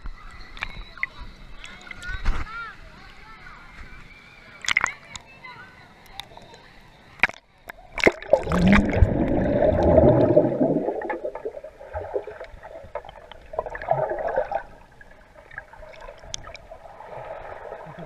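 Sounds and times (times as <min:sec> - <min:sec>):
pool water splashing and sloshing: 0:07.2 - 0:18.0.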